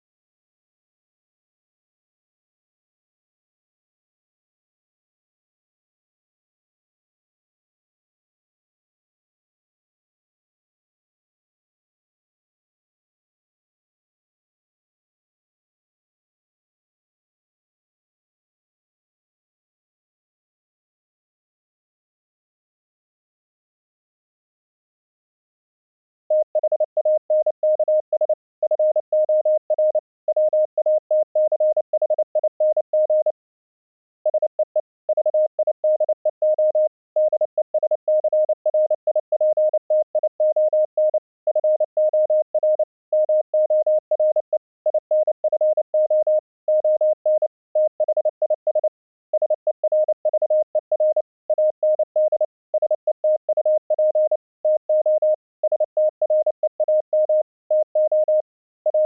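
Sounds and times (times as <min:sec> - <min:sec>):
morse code tone: 0:26.3 - 0:33.4, 0:34.3 - 0:59.0.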